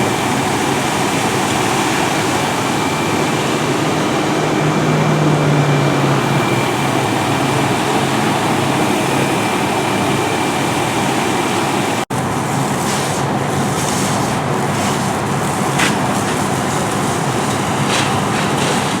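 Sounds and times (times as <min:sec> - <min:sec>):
fire engine pump running: 0:00.0 - 0:19.0.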